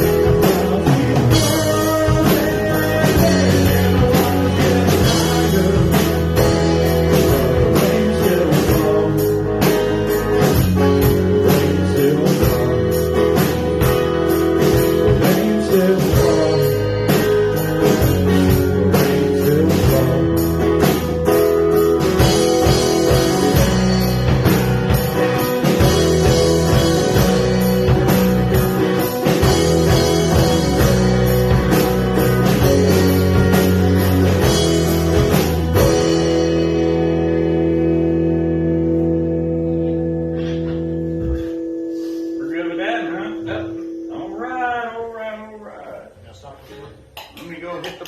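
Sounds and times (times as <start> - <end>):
drum kit: 0.0 - 45.2
rock band playing live: 0.0 - 46.2
guitar chord ringing: 21.5 - 45.9.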